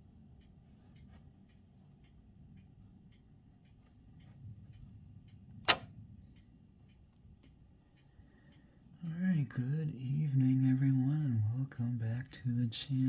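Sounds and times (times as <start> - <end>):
faint uneven ticking: 0.0 - 13.0
low steady rumble: 0.0 - 13.0
sharp loud click: 5.6 - 5.9.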